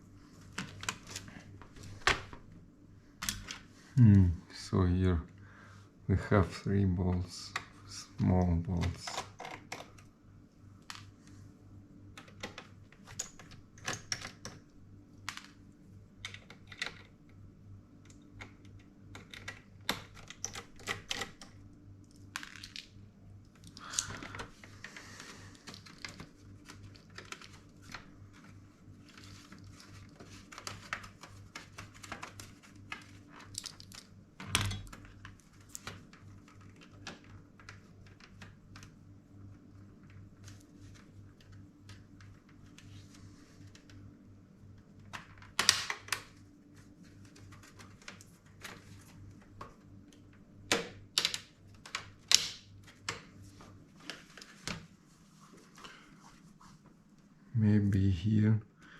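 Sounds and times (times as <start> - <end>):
low steady hum: 0.0 - 58.9
clicks of small parts handled: 33.4 - 35.0.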